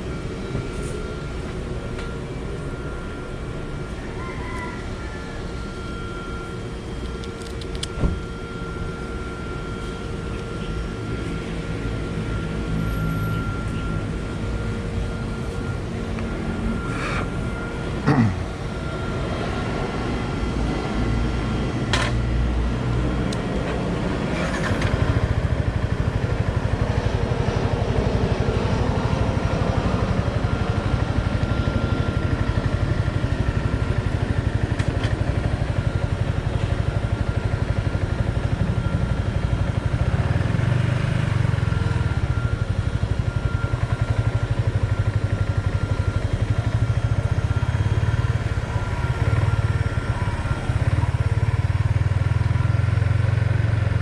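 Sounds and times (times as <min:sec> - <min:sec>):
motorcycle engine running: 0:22.6 - 0:54.0.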